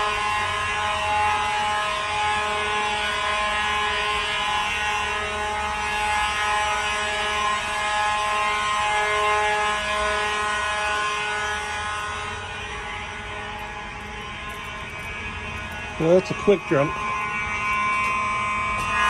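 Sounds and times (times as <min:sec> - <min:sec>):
fire alarm horns: 0:00.0 - 0:19.0.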